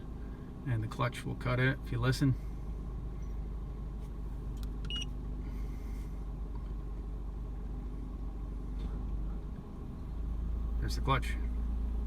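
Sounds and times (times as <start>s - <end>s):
car engine idling: 0.0s - 12.0s
short high beep: 4.9s - 5.1s.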